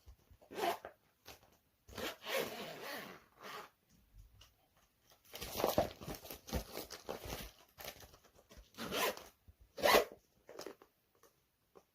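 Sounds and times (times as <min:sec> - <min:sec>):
zipper rasping: 0:00.5 - 0:00.8, 0:01.9 - 0:03.7, 0:08.8 - 0:09.2, 0:09.8 - 0:10.1.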